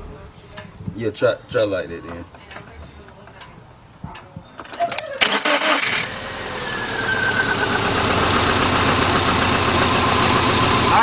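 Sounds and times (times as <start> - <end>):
starter motor cranking: 5.2 - 10.9
car engine running rough: 5.8 - 11.0.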